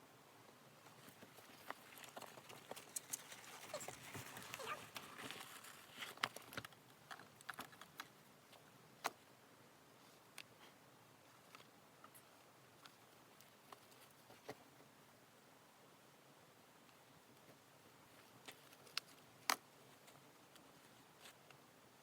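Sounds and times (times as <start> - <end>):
rustling: 0.8 - 8.6.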